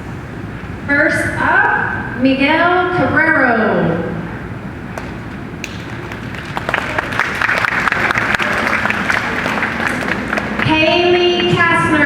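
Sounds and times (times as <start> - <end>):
audience applauding: 5.3 - 11.6.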